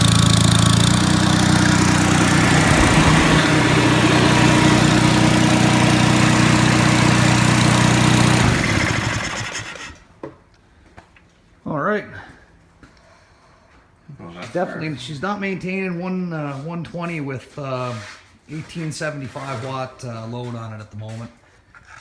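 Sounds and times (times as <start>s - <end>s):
generator engine running: 0.0s - 10.0s.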